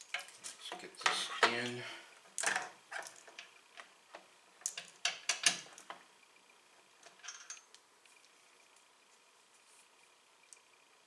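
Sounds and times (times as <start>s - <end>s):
small part and screws clicking: 2.4s - 6.0s.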